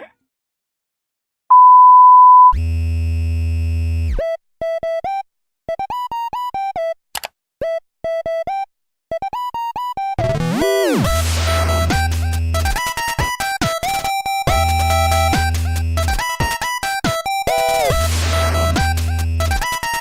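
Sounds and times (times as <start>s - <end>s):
loud electronic beep: 1.5s - 2.6s
bouncy synthesizer melody: 7.6s - 20.0s.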